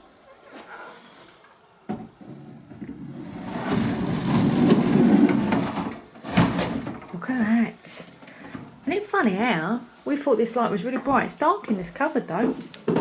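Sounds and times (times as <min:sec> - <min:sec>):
drawer sliding on runners: 0:02.8 - 0:07.0.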